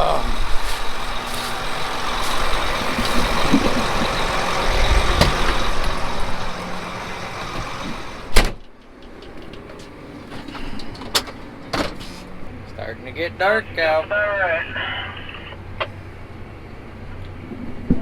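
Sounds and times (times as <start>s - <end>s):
farm machinery rumbling: 0.0s - 16.0s
cab door slamming: 2.0s - 8.7s, 9.5s - 12.2s.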